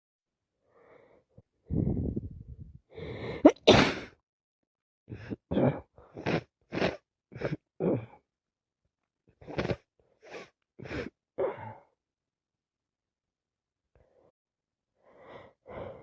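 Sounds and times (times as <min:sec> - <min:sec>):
woman sneezing: 0:03.5 - 0:04.1.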